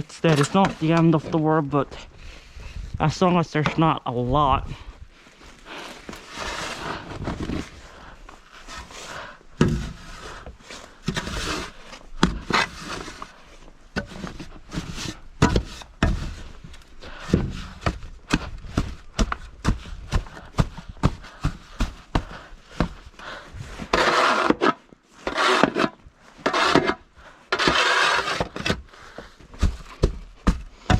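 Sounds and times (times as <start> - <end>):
shovel scraping snow: 5.7 - 7.8, 8.5 - 13.4, 23.8 - 29.2
shovel striking snow: 27.6 - 28.8.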